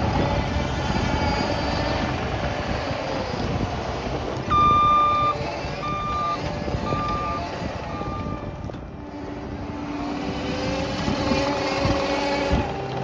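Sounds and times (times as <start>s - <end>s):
diesel engine running: 0.0s - 13.0s
backup alarm beeping: 4.5s - 8.5s.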